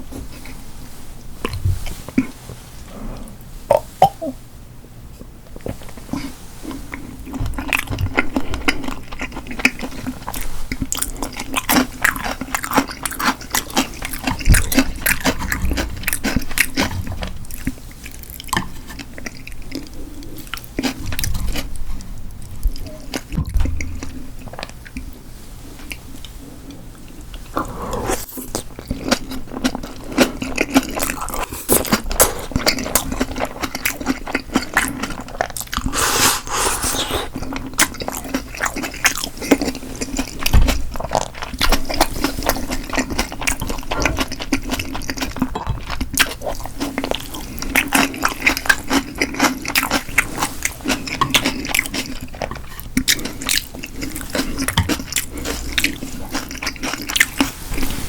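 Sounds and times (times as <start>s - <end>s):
chewing food: 5.6s - 25.2s, 25.8s - 58.0s
wet mouth clicks: 27.4s - 28.7s, 35.6s - 37.4s
brief hissing rush: 35.9s - 37.3s.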